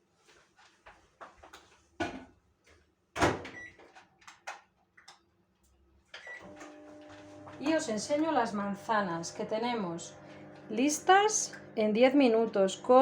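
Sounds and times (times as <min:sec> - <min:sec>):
microwave oven humming: 0:06.2 - 0:13.0.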